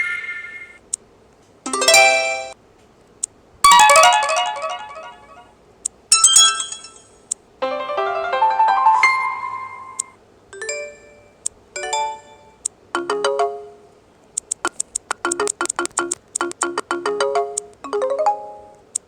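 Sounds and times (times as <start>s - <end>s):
electronic ringtone melodies: 1.7s - 2.6s, 3.7s - 5.5s, 6.2s - 13.8s, 15.3s - 18.8s.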